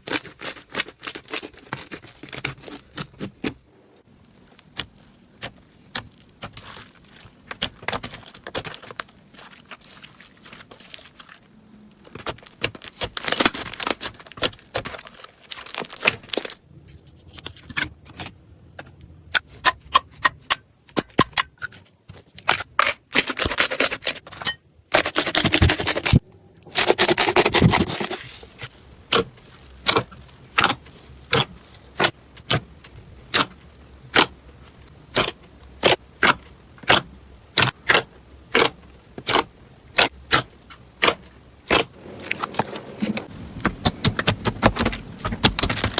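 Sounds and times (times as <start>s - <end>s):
slime popping and crackling: 4.2s - 11.5s, 25.3s - 42.6s, 43.6s - 45.9s.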